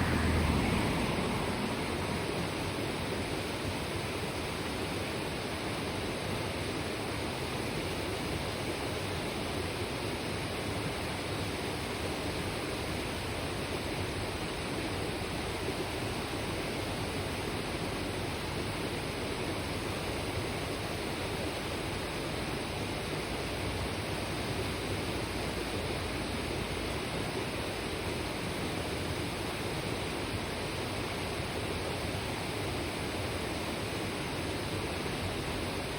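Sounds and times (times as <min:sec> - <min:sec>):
river rushing over rocks: 0:00.0 - 0:35.9.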